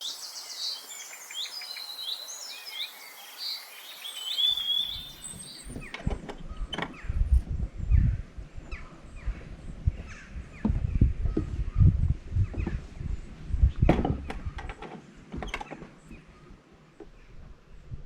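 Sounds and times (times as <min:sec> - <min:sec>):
songbirds singing: 0:00.0 - 0:18.0
low rumbling thumps: 0:05.2 - 0:14.8.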